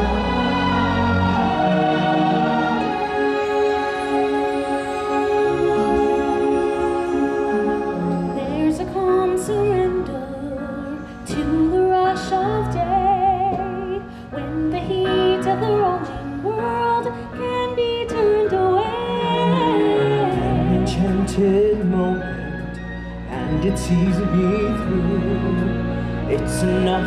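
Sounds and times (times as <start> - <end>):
sustained accompaniment chords: 0.0 - 13.2
woman singing with vibrato: 0.0 - 20.9.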